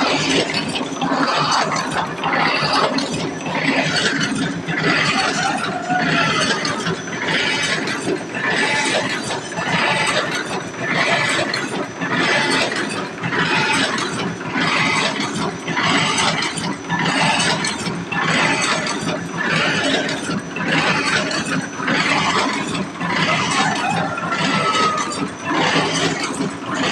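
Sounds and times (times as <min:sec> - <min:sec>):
machine clattering and clanking: 0:00.0 - 0:26.9.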